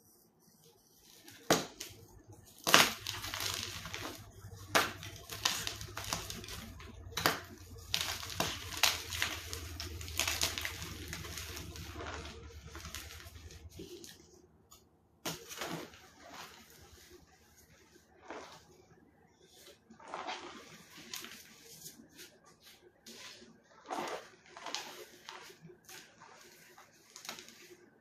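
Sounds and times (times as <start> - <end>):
low steady hum: 0.0 - 28.0
crunching and crackling with snaps: 1.1 - 18.8.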